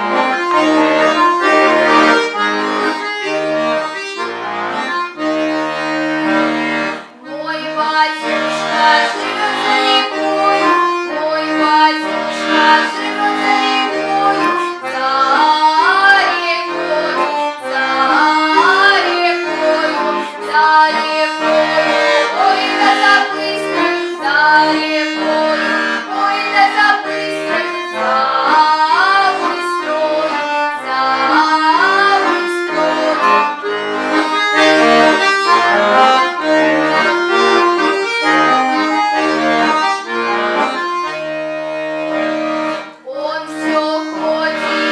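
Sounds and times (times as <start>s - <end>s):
accordion chords: 0.0s - 44.9s
girl singing: 7.1s - 33.6s, 42.9s - 44.9s.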